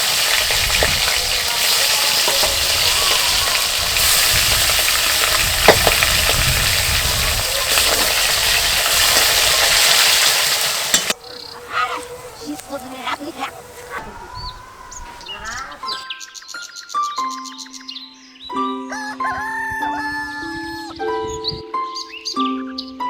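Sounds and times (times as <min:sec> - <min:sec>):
food sizzling in hot oil: 0:00.0 - 0:11.2
utensil clinking: 0:00.0 - 0:11.2.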